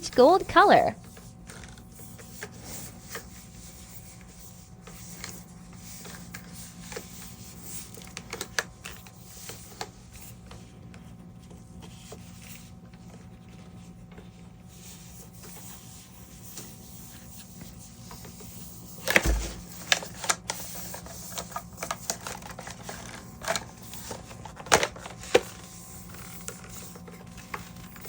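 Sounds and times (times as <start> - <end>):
steady low hum: 19.1 - 20.0.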